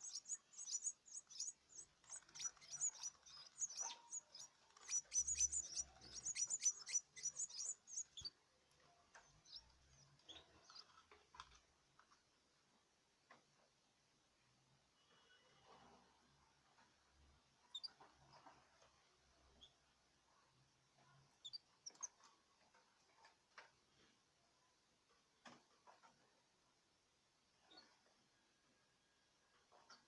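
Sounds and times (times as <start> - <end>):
chicks cheeping: 0.0 - 8.3.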